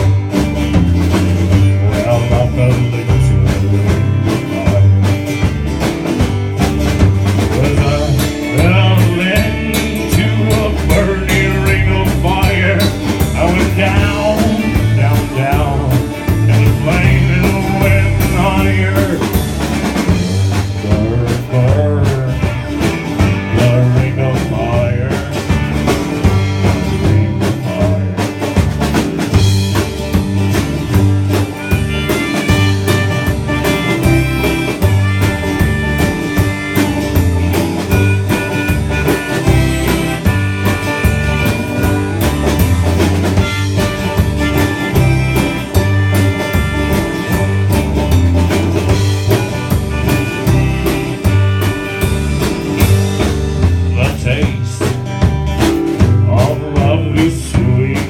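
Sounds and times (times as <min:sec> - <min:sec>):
country-rock band playing: 0:00.0 - 0:58.0
wavering lead melody: 0:31.0 - 0:53.8.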